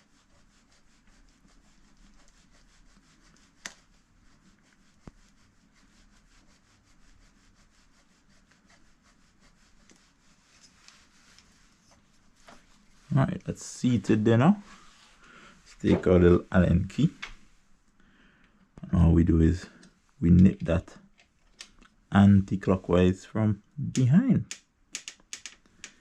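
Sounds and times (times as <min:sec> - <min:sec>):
sharp metal clicks: 0:24.5 - 0:26.0.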